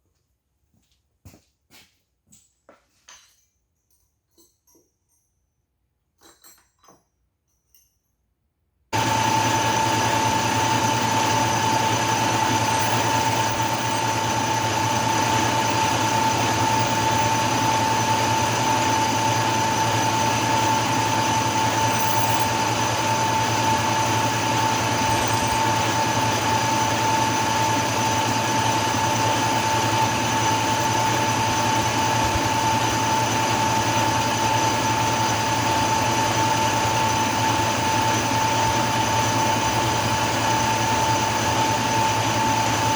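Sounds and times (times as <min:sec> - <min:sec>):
drill boring metal: 0:09.0 - 0:42.9
machine spindle whining: 0:09.0 - 0:42.9.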